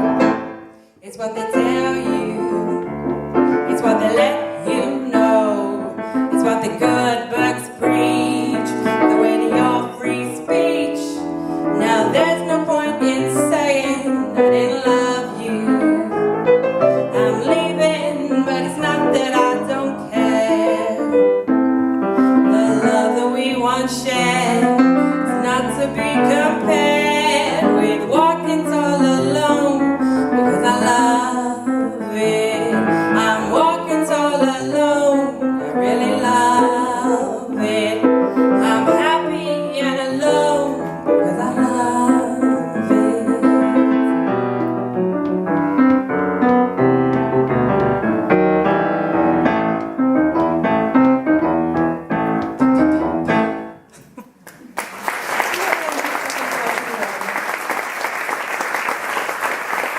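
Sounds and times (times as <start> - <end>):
piano ballad: 0.0 - 54.4
woman singing: 1.0 - 21.4, 22.3 - 44.3.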